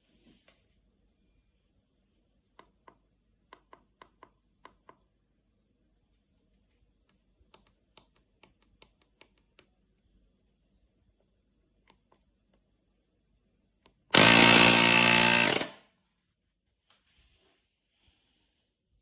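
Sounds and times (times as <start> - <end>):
faint sharp clicks and taps: 2.5 - 5.2, 6.1 - 9.8.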